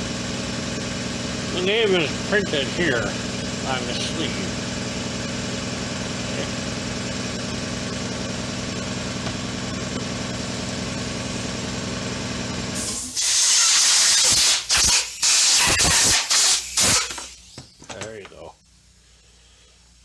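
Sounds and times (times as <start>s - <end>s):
air blow gun hissing: 12.8s - 17.6s.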